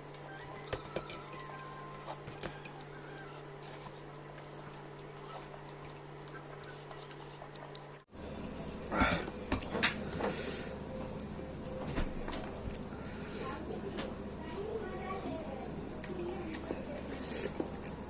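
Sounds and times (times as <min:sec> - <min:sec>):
food crunching: 0:00.0 - 0:09.8
chewing food: 0:00.0 - 0:09.9, 0:15.9 - 0:18.0
steady low hum: 0:00.0 - 0:18.0.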